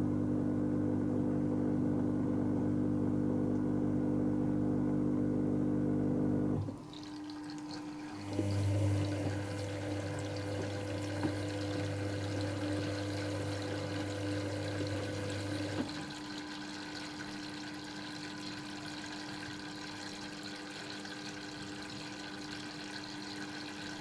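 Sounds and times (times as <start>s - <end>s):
washing machine motor hum: 0.0s - 24.0s
water rushing through machine: 6.6s - 24.0s.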